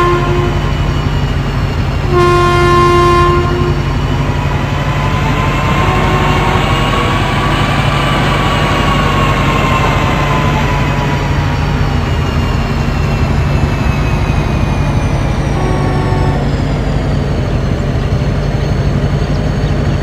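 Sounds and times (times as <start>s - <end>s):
train horn: 0.0s - 1.1s, 2.0s - 4.1s, 5.1s - 7.5s, 15.5s - 16.6s
moving train rumble: 0.0s - 20.0s.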